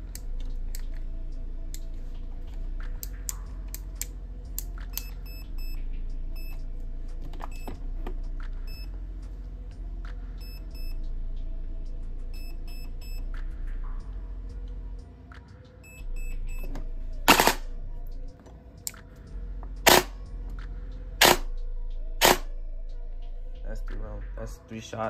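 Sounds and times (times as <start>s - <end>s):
steady low hum: 0.0s - 24.6s
electronic beeps: 4.9s - 5.8s, 6.4s - 6.6s.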